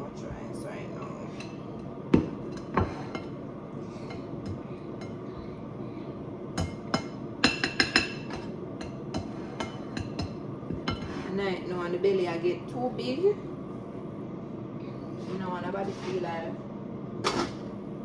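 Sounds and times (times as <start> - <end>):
spoon knocking against pot: 6.6 - 11.1.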